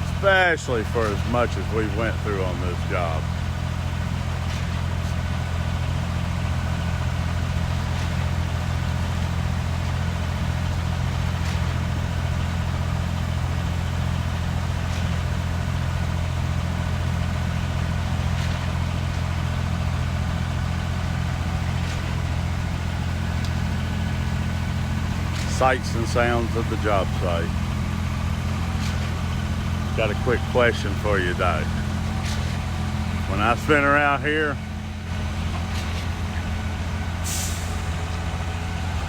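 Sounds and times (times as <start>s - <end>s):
diesel engine at full throttle: 0.0s - 39.0s.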